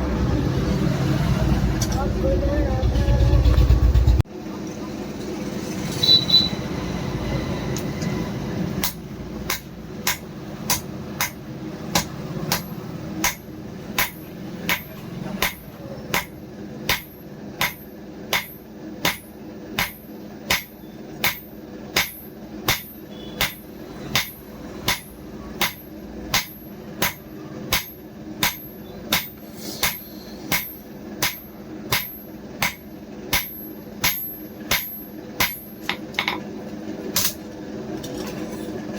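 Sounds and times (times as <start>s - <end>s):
hammer striking steel on anvil: 8.7s - 36.5s.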